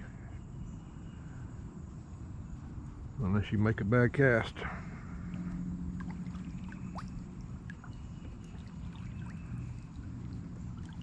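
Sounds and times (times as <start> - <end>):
steady low hum: 0.0 - 11.0
water trickling and dripping: 5.2 - 11.0.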